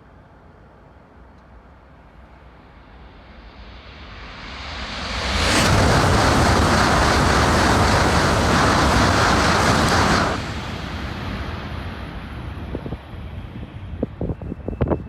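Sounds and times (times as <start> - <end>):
train passing at speed: 0.0 - 15.0
train rumble: 5.1 - 15.0.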